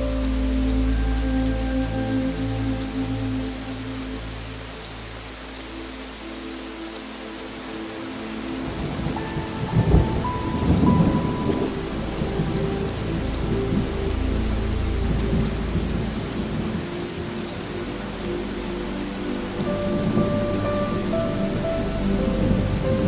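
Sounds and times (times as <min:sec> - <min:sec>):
steady rain falling: 0:00.0 - 0:23.0
thunder rumbling: 0:08.6 - 0:18.6.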